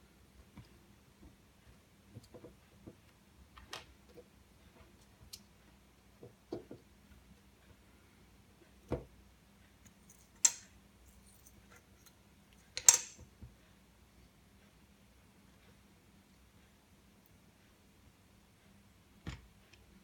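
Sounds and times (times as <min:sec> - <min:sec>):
small tools clicking and tapping: 0:09.8 - 0:13.3.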